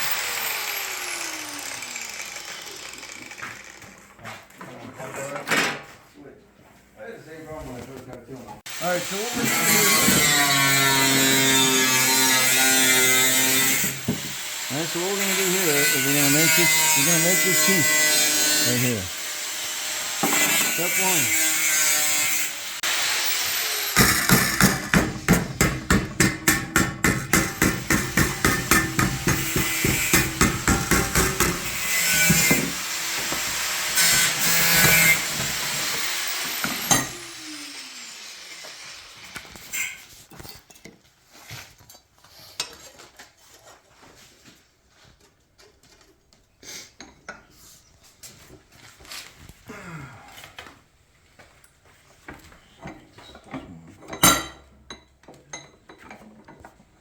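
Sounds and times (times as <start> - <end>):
power tool cutting sheet metal: 0.0 - 4.1, 8.7 - 40.1.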